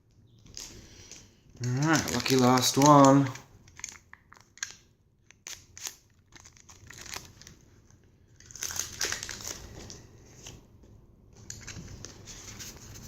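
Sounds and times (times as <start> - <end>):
foil wrapper crinkling and tearing: 0.5 - 10.1.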